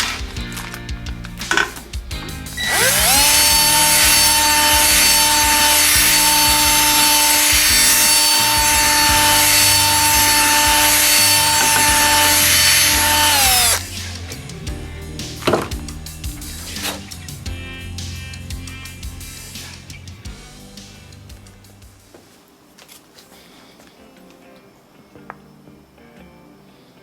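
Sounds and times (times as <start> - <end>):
chainsaw cutting wood: 2.6 - 14.2, 16.7 - 17.1.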